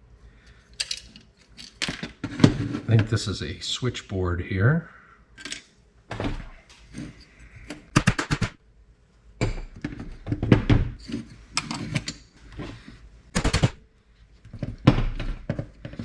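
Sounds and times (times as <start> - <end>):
hammer striking printer parts: 7.8 - 8.6, 13.4 - 13.8.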